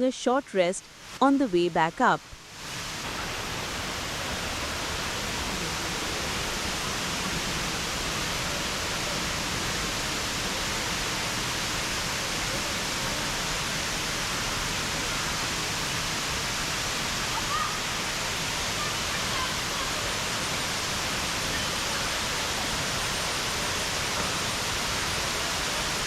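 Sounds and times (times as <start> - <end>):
waterfall rushing: 2.3 - 26.0.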